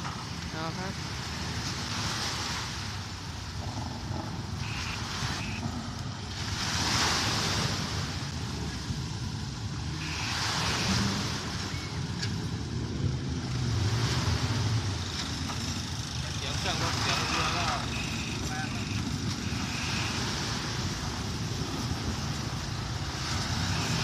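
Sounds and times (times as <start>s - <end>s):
vehicle engine rumbling: 0.0s - 24.0s
rushing noise: 1.8s - 24.0s.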